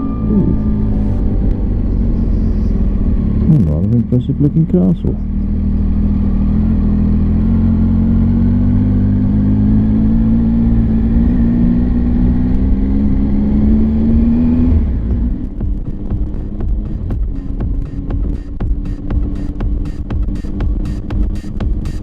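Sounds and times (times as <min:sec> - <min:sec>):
motorcycle engine running: 0:00.0 - 0:22.0
sharp ticks: 0:15.3 - 0:22.0.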